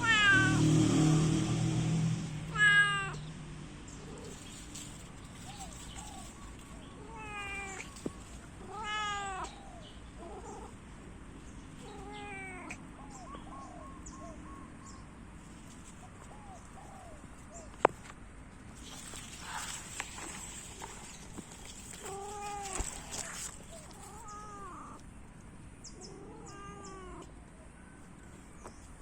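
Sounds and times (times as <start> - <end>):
cat meowing: 0.0 - 0.7, 2.5 - 3.3, 7.0 - 8.0, 8.6 - 10.8, 11.8 - 12.9, 22.0 - 25.0, 26.1 - 27.3.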